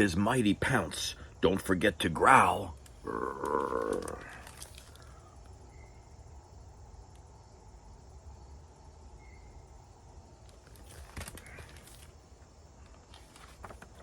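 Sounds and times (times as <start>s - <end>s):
faint chirp: 3.0s - 6.6s, 9.0s - 10.0s
handling rustle: 10.5s - 14.0s.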